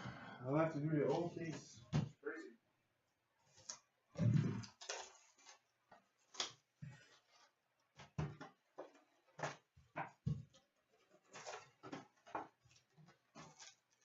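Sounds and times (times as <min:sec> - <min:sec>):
wrapping rustling: 0:04.7 - 0:07.6, 0:10.8 - 0:14.0.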